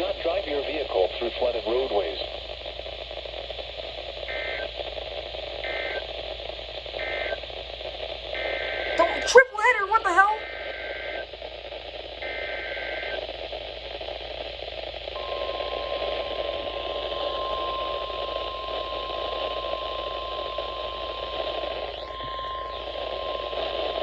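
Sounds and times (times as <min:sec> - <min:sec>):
radio static hiss: 0:00.0 - 0:24.0
steady alarm tone: 0:15.2 - 0:24.0.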